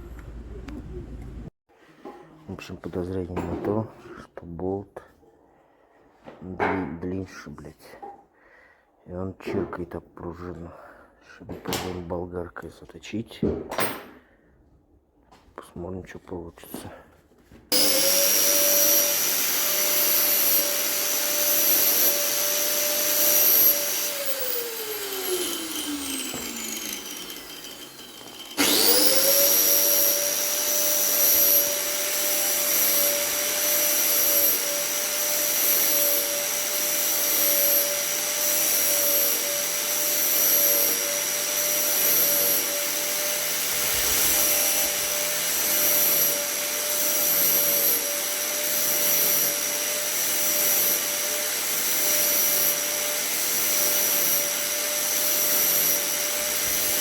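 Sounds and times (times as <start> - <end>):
angle grinder running: 17.7 - 57.0
grinder winding down: 17.7 - 57.0.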